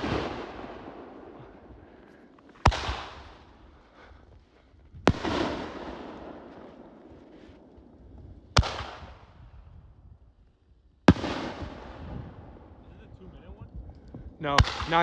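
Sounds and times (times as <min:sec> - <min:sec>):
firework bangs: 0:00.0 - 0:03.8, 0:05.1 - 0:09.6, 0:11.1 - 0:12.9.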